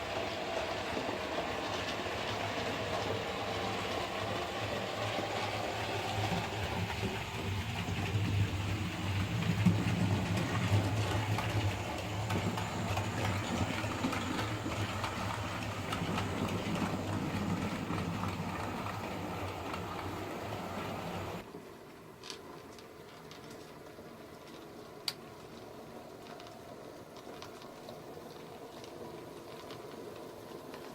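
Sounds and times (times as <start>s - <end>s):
model train motor hum: 0.0s - 21.4s
wheels clicking on rails: 0.0s - 21.5s.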